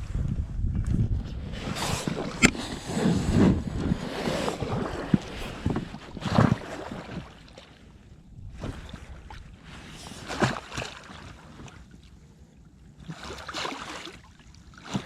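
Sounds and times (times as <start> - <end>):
wind on microphone: 0.0 - 7.4, 8.2 - 10.3.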